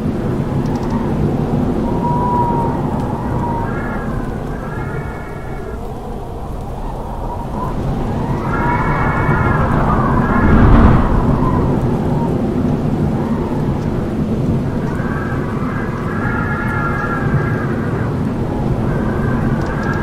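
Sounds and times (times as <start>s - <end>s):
howling wind gusts: 0.0s - 20.0s.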